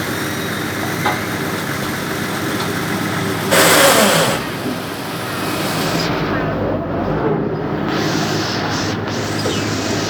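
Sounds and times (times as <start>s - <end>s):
diesel engine running: 0.0s - 10.0s
loud hiss burst: 3.5s - 6.3s, 7.8s - 10.0s.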